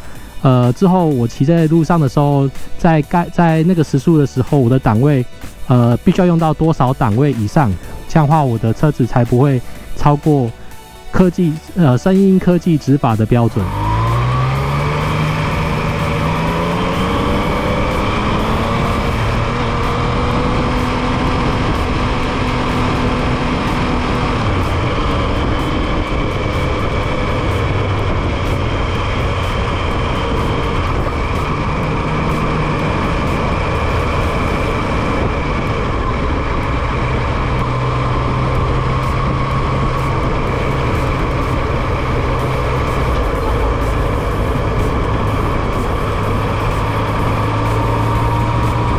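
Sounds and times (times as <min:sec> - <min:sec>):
motorcycle engine running: 0:00.0 - 0:48.9
wind noise: 0:12.8 - 0:48.9.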